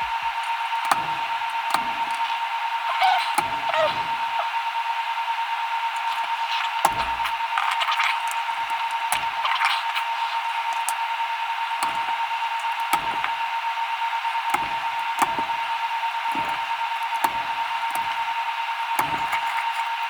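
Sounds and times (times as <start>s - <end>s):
keyboard switch clicks: 0.0s - 2.2s, 3.3s - 4.2s, 6.8s - 7.4s, 11.8s - 13.4s, 14.5s - 15.6s, 16.3s - 18.3s
high steady hum: 0.0s - 20.0s.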